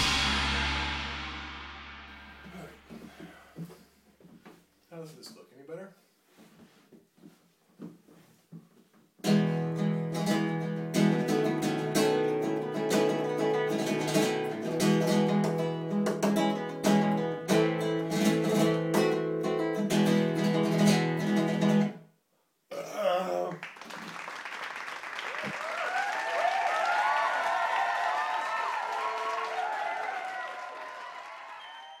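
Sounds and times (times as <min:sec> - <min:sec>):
acoustic guitar strumming: 0:09.2 - 0:22.0.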